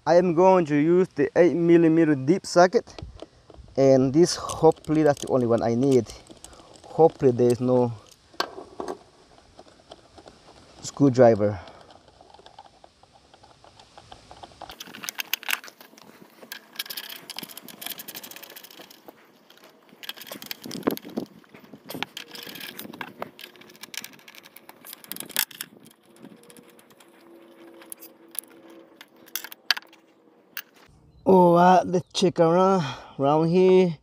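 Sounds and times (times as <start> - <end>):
metal hand tools clinking: 4.2 - 8.3, 9.5 - 30.9.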